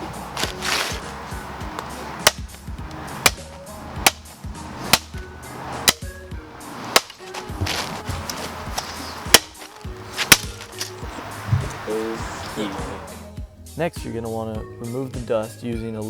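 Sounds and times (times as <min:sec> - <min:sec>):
background music: 0:00.0 - 0:16.0
sharp whacks on plastic case: 0:01.7 - 0:04.3, 0:04.9 - 0:05.2, 0:06.9 - 0:11.0.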